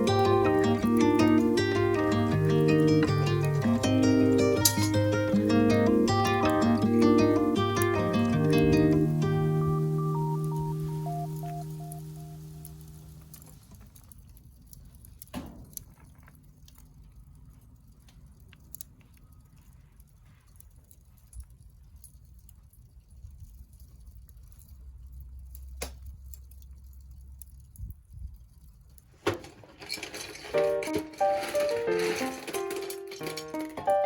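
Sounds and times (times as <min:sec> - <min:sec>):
small fire crackling: 0:00.0 - 0:34.0
sharp pops of fire: 0:11.4 - 0:16.4, 0:25.6 - 0:26.6.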